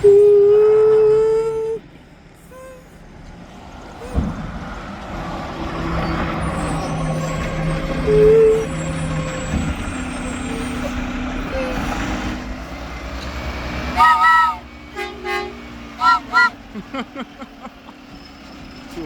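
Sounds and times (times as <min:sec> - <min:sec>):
garbage truck diesel engine: 0:00.0 - 0:19.0
thump: 0:04.1 - 0:04.6
whistle or horn blast: 0:06.6 - 0:11.0, 0:13.9 - 0:16.6
short loud horn toot: 0:14.0 - 0:16.5.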